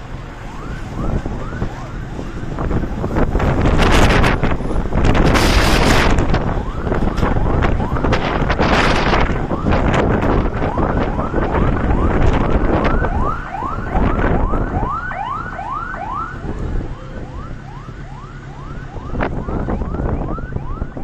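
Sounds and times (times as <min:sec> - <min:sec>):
wind buffeting microphone: 0:00.0 - 0:21.0
electronic siren yelping: 0:05.3 - 0:21.0.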